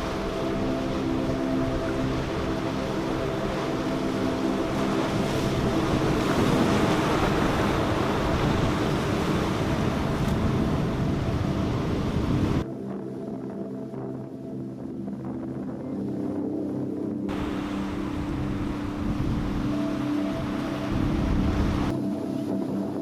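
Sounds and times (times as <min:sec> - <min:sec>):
boat engines droning: 0:00.0 - 0:12.6, 0:17.3 - 0:22.2
heavy wind: 0:00.0 - 0:23.0
waves: 0:00.0 - 0:23.0.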